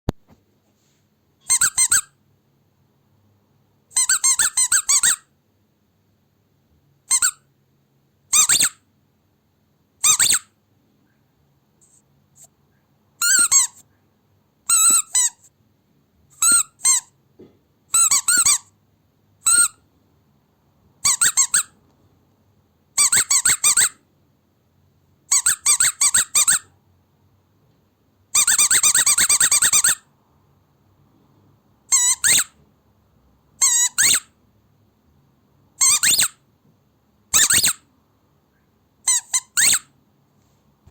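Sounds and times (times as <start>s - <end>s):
squeaky dog toy squeaking: 1.4s - 2.2s, 3.9s - 5.3s, 7.1s - 7.5s, 8.3s - 8.8s, 10.0s - 10.6s, 13.2s - 13.8s, 14.7s - 15.5s, 16.3s - 17.2s, 17.9s - 18.8s, 19.4s - 19.8s, 21.0s - 21.8s, 23.0s - 24.0s, 25.3s - 26.7s, 28.3s - 30.1s, 31.9s - 32.6s, 33.6s - 34.4s, 35.8s - 36.4s, 37.3s - 37.9s, 39.0s - 39.9s.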